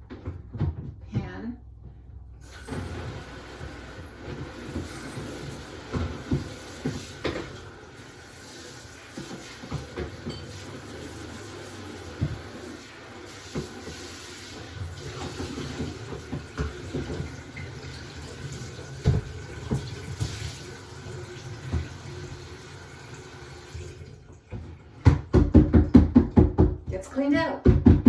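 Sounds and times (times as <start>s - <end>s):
plastic pan knocking against sink: 0.0s - 1.3s, 24.5s - 27.0s, 27.6s - 28.0s
tap water running into sink: 2.4s - 26.4s.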